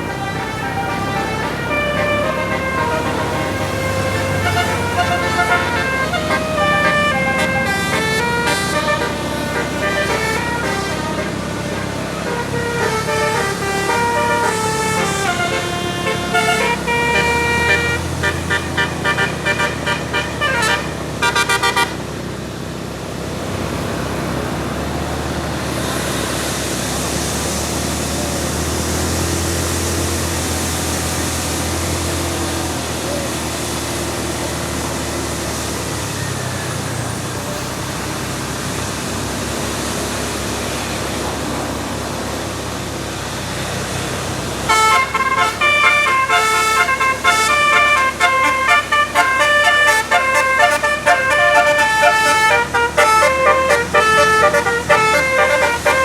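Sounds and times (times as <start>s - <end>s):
musical air horn melody: 0.0s - 22.0s, 44.6s - 56.0s
road noise: 0.0s - 56.0s
vehicle engine running: 0.0s - 56.0s.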